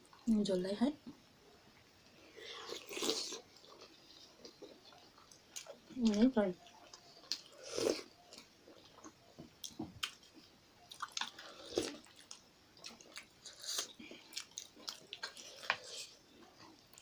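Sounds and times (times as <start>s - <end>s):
wet chewing and biting: 6.6s - 16.2s.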